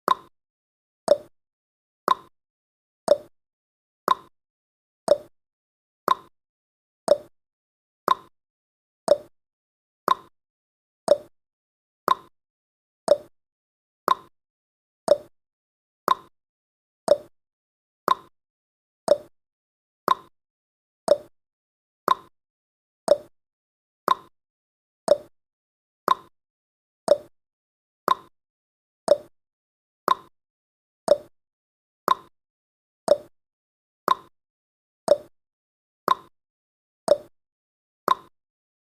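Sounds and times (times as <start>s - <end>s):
timer ticking: 1.1s - 1.3s, 3.1s - 3.3s, 5.1s - 5.3s, 7.1s - 7.3s, 9.1s - 9.3s, 11.1s - 11.3s, 13.1s - 13.3s, 15.1s - 15.3s, 17.1s - 17.3s, 19.1s - 19.3s, 21.1s - 21.3s, 23.1s - 23.3s, 25.1s - 25.3s, 27.1s - 27.3s, 29.1s - 29.3s, 31.1s - 31.3s, 33.1s - 33.3s, 35.1s - 35.3s, 37.1s - 37.3s, 38.1s - 38.3s.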